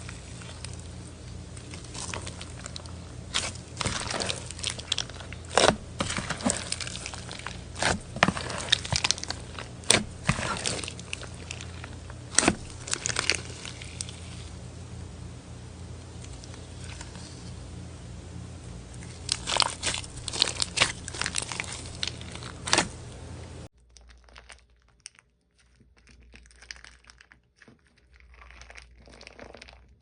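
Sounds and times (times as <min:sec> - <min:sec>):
crunchy slime crackling and popping: 0:00.0 - 0:14.6, 0:18.9 - 0:23.2, 0:23.8 - 0:30.0
faint low hum: 0:00.0 - 0:26.4.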